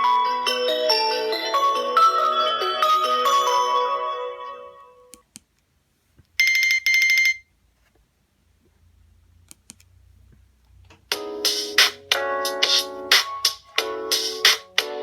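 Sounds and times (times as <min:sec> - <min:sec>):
melodic ringtone: 0:00.0 - 0:05.1, 0:11.1 - 0:15.0.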